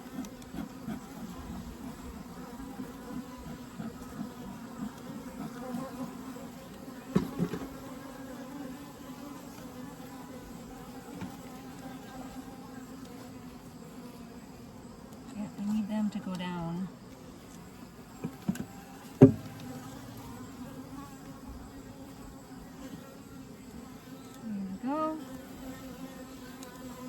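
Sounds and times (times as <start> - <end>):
honeybees buzzing: 0.0 - 27.0
sharp knock: 19.2 - 20.4.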